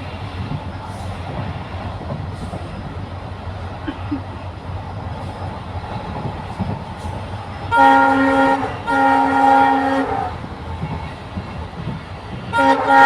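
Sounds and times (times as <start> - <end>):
train rumbling on track: 0.0 - 13.0
locomotive horn blasts: 7.7 - 10.4, 12.5 - 13.0.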